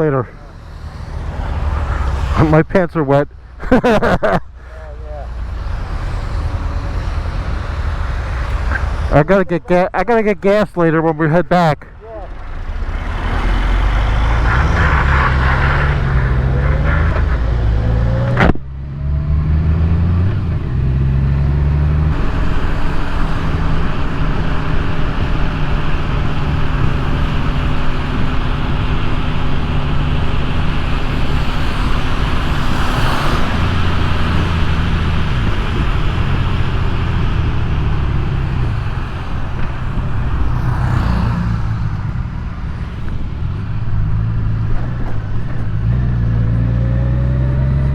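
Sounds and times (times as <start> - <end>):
tyre noise on wet road: 0.0 - 9.4, 12.1 - 47.9
wind noise: 19.4 - 47.9.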